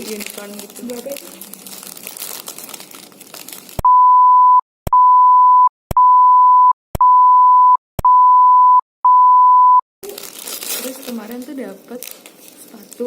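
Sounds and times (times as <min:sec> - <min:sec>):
electronic beeps: 0:03.8 - 0:09.8.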